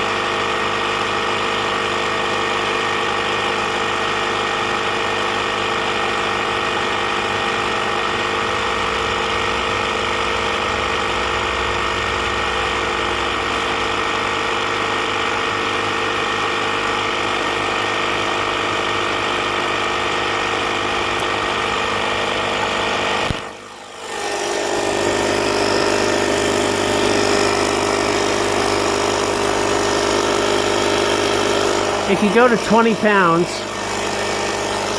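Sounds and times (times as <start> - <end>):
electric air pump humming: 16.6 - 34.9.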